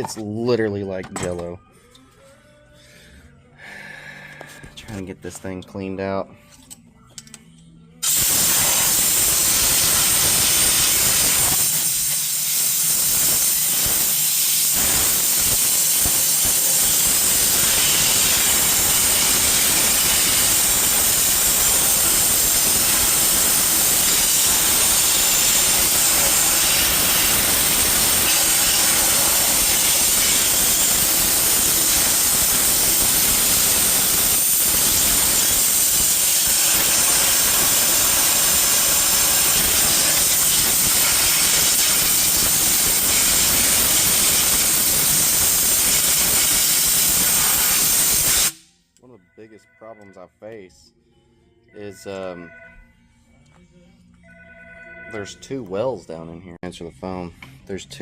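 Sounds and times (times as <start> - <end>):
air blow gun hissing: 8.0 - 48.7.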